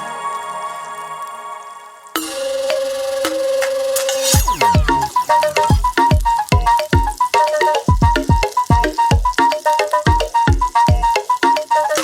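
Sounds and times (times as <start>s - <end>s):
steady held note: 2.2s - 6.5s
sharp percussive hits: 2.2s - 6.7s.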